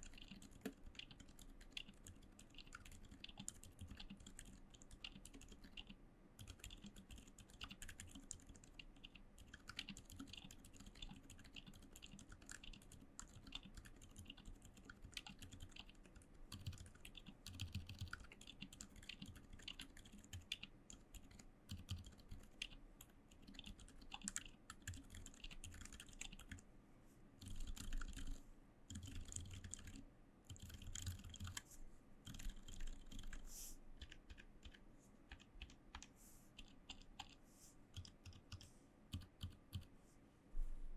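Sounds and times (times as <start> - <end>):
soft muffled keyboard typing: 0.0 - 26.6, 27.4 - 40.0.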